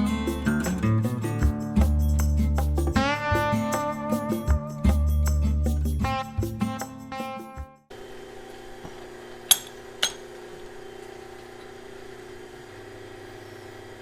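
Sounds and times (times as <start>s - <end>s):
background music: 0.0s - 7.8s
milling machine humming: 7.9s - 14.0s.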